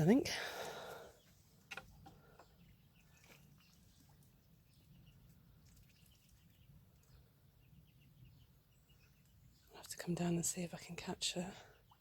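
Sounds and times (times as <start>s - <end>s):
poultry chirping: 1.2s - 10.4s.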